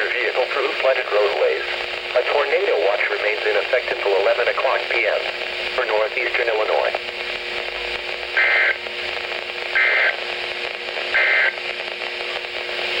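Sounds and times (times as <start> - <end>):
radio static hiss: 0.0 - 13.0
two-tone data bursts: 8.4 - 8.8, 9.8 - 10.2, 11.1 - 11.6.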